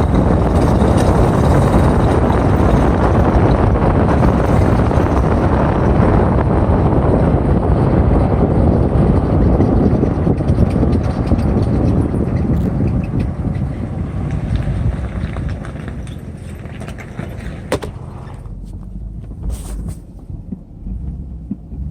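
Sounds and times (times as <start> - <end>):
road and drivetrain rumble: 0.0 - 21.9.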